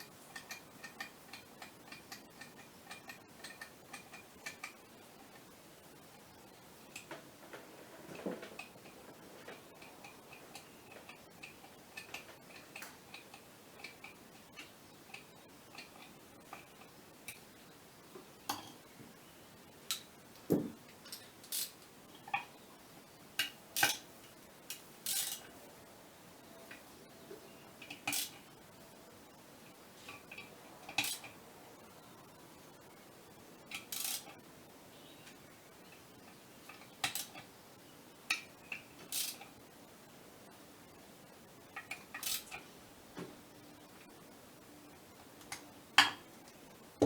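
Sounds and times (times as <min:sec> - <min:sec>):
metallic clicks of hand tools: 0:00.3 - 0:04.8, 0:24.7 - 0:25.5, 0:33.7 - 0:34.3, 0:36.7 - 0:37.4, 0:39.0 - 0:39.5, 0:41.8 - 0:42.6.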